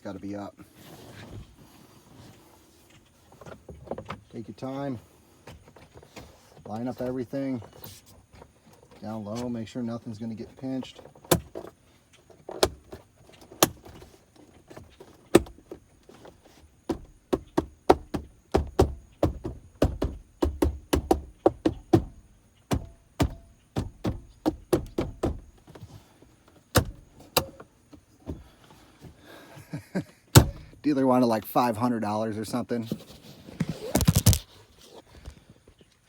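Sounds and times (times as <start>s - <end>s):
plastic trim panels clicking: 26.7s - 27.7s.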